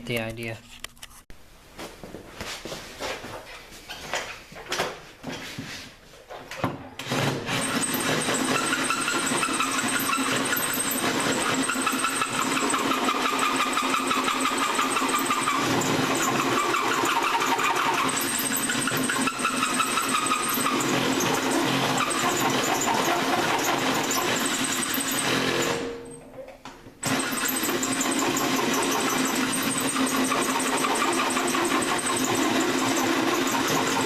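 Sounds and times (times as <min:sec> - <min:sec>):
electric drill boring: 0:07.0 - 0:26.0, 0:27.0 - 0:34.0.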